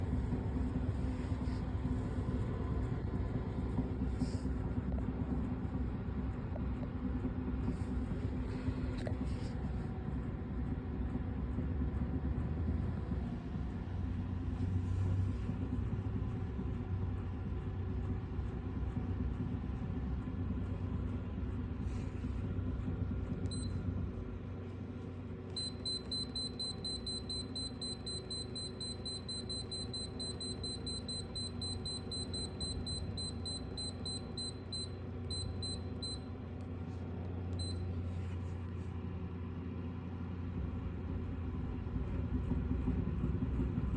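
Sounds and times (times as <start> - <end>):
steady low hum: 0.0 - 43.9
high electronic beeps: 25.6 - 36.2.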